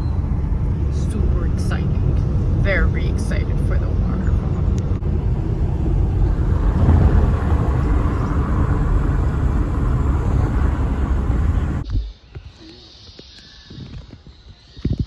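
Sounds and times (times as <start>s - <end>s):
car road and engine rumble: 0.0s - 11.9s.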